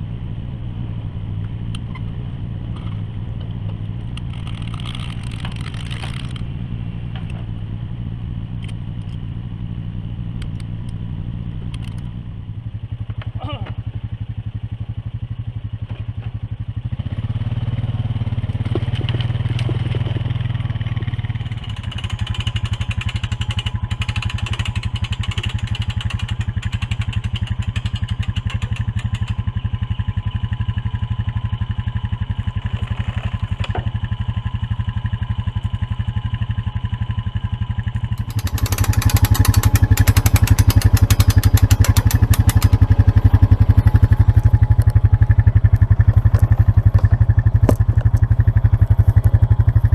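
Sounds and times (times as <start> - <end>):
rattling clatter: 4.2 - 6.4, 21.4 - 29.5, 38.1 - 49.8
excavator diesel engine: 16.9 - 49.9.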